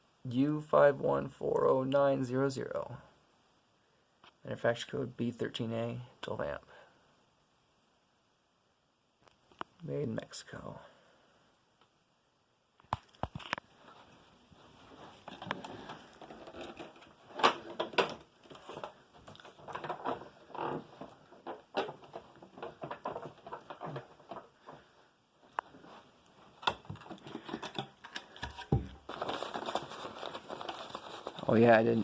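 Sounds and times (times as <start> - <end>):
plastic clicks and knocks: 15.3 - 24.8.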